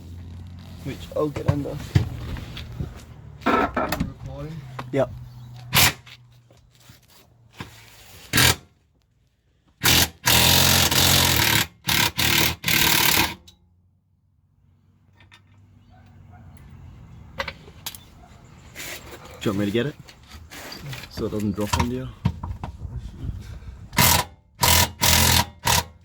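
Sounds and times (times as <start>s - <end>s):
impact wrench bursts: 5.7s - 6.1s, 8.3s - 8.7s, 9.8s - 13.5s, 24.0s - 26.0s.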